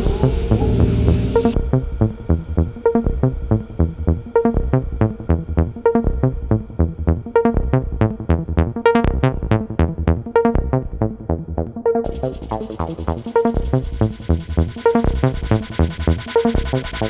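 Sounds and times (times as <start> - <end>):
electronic music with synthesizer: 0.0 - 1.6, 12.0 - 17.0
fast steady beat: 12.1 - 17.0.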